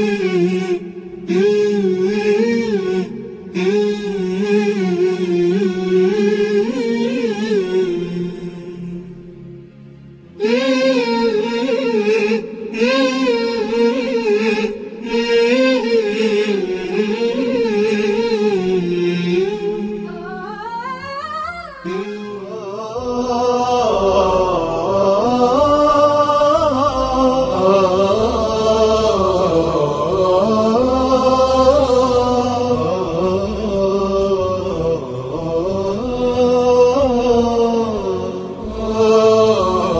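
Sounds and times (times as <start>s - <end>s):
person singing: 0.0s - 9.2s, 10.4s - 39.9s
low bass: 21.5s - 39.9s.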